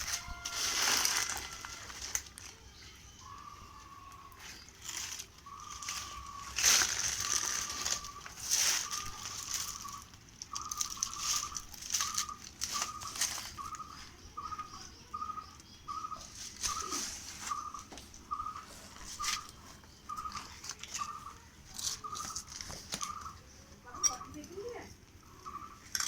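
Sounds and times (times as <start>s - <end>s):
electronic warning beeps: 7.2s - 24.4s.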